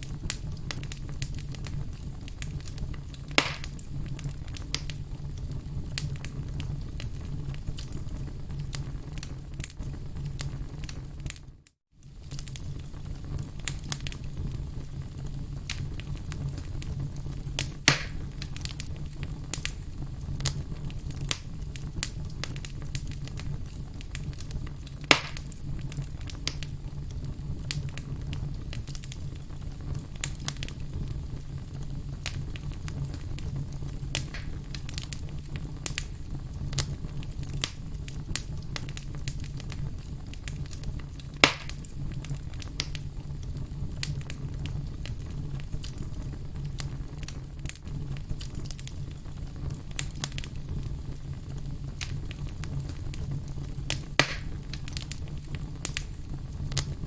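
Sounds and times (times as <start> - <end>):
firewood crackling: 0.0 - 57.0
low rumble of flames: 0.0 - 57.0
sharp pops and snaps: 0.2 - 3.8, 17.6 - 19.8, 24.2 - 26.7, 34.1 - 36.1, 40.5 - 43.1, 53.9 - 55.2, 55.8 - 56.1, 56.7 - 57.0.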